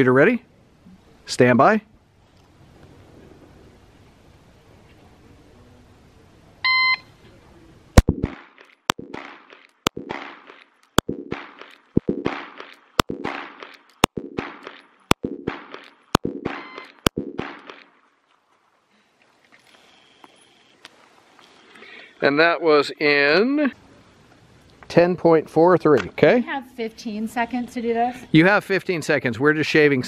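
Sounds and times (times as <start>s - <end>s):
shot timer beep: 6.6s - 7.1s, 16.1s - 17.4s
pistol shots: 8.0s - 17.9s.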